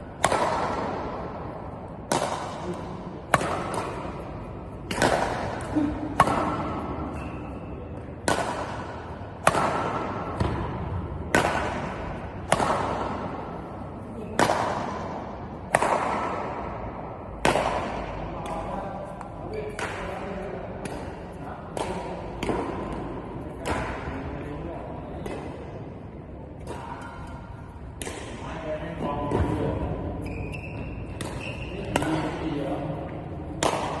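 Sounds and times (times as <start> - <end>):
racket hitting shuttlecock: 0.0 - 24.6, 26.6 - 28.4, 29.0 - 34.0
brief high squeak: 30.2 - 31.7.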